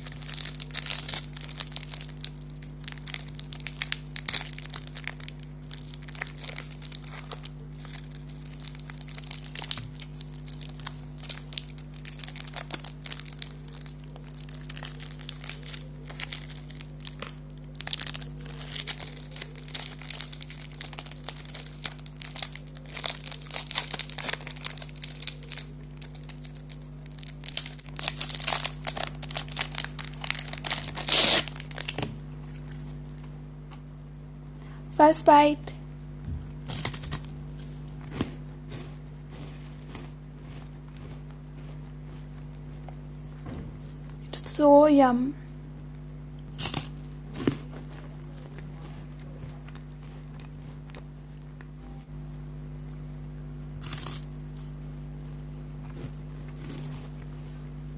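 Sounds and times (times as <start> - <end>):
plastic wrappers crinkling and tearing: 0.0 - 33.3, 36.3 - 43.0, 52.6 - 57.6
steady low hum: 0.0 - 57.9.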